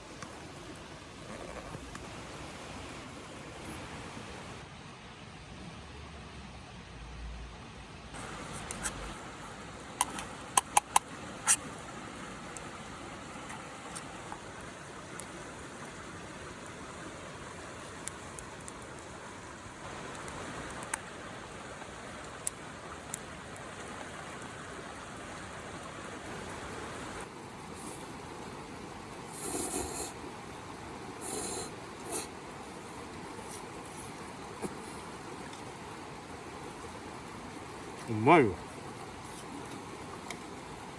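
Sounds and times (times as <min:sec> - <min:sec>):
wood fire crackling and popping: 0:09.8 - 0:11.6, 0:13.4 - 0:27.4.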